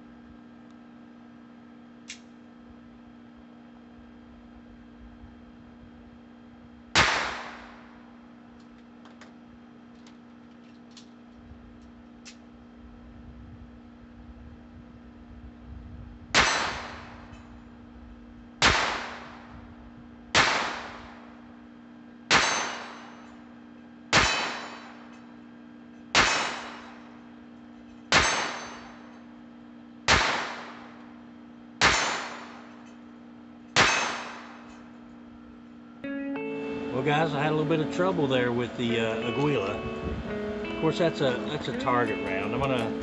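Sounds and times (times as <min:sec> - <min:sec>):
pistol shots: 0:06.9 - 0:07.9, 0:16.4 - 0:17.2, 0:18.6 - 0:19.5, 0:20.3 - 0:21.2, 0:22.3 - 0:23.1, 0:24.1 - 0:25.1, 0:26.1 - 0:27.1, 0:28.1 - 0:28.9, 0:30.1 - 0:31.0, 0:31.8 - 0:32.7, 0:33.8 - 0:34.7.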